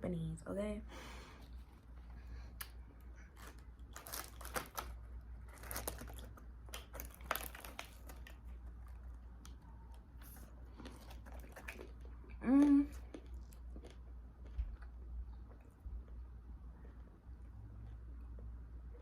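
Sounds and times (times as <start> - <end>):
low steady hum: 0.0 - 19.0
person chewing: 1.4 - 16.3
food container crinkles and clicks: 3.4 - 9.6.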